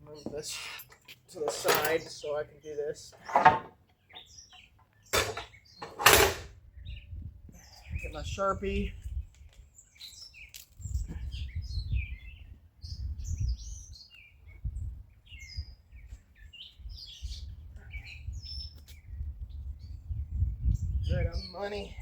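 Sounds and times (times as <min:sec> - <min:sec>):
birds chirping and calling: 0:00.0 - 0:22.0.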